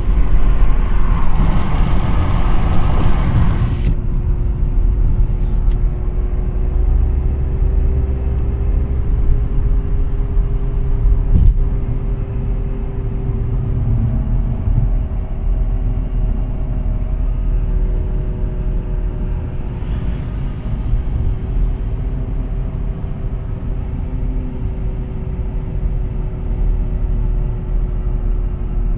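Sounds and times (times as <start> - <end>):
droning wheel bearing hum: 0.0 - 4.0
road rumble: 0.0 - 28.9.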